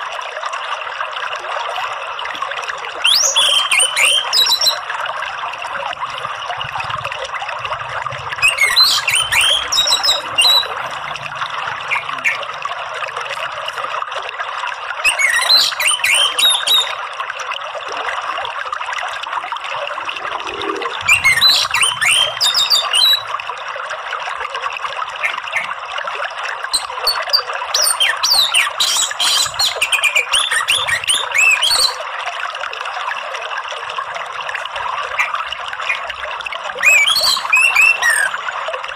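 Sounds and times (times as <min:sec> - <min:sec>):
running water rushing: 0:00.0 - 0:38.9
thrush singing whistled phrases: 0:03.0 - 0:04.9, 0:08.4 - 0:10.9, 0:11.8 - 0:12.5, 0:15.0 - 0:17.0, 0:20.6 - 0:23.3, 0:25.2 - 0:25.7, 0:26.7 - 0:32.0, 0:36.8 - 0:38.4.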